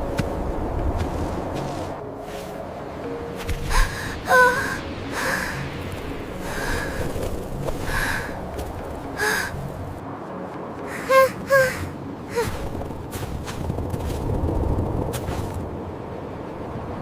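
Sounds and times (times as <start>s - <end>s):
breathy gasping vocal sounds: 3.7s - 7.2s, 7.8s - 8.5s, 9.2s - 9.7s, 10.9s - 12.6s.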